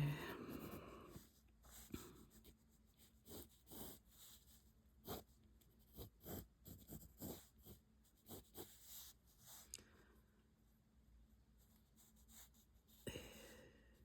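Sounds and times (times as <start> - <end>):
pencil scratching on paper: 0.5 - 9.6, 11.6 - 13.0.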